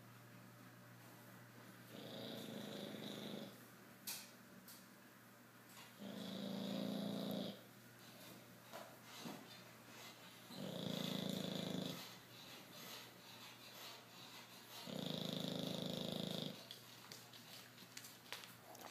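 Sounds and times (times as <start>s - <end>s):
dog snoring with whistle: 1.9s - 3.6s, 6.0s - 7.6s, 10.5s - 12.2s, 14.7s - 16.6s.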